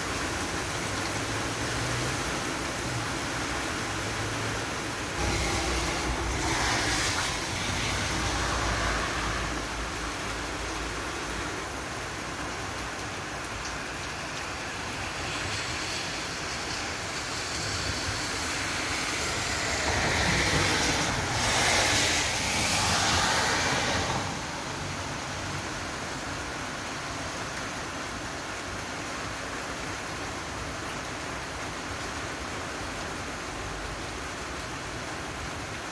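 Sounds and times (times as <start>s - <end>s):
rain falling: 0.0s - 35.9s
rush of noise: 2.2s - 12.3s, 13.0s - 27.2s.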